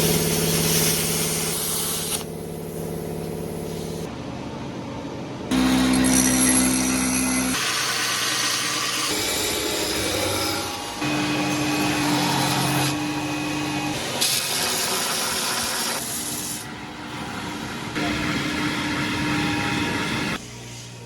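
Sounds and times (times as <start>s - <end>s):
steady motor hum: 0.0s - 14.2s
power tools grinding: 5.5s - 16.6s.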